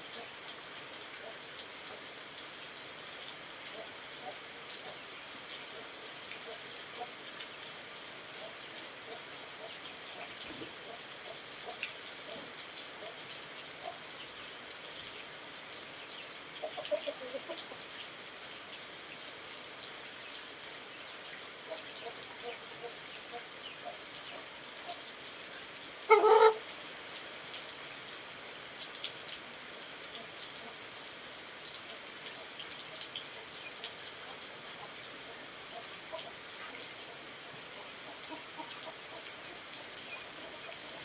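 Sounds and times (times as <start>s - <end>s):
rain falling: 0.0s - 41.0s
chickens clucking: 9.6s - 10.9s, 16.6s - 17.8s, 26.1s - 26.6s
chicken squawk: 26.1s - 26.7s.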